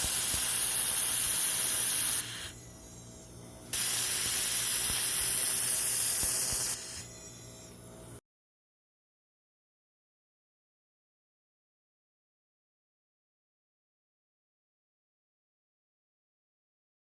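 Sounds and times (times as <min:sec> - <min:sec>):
laser welder hissing: 0:00.0 - 0:08.2.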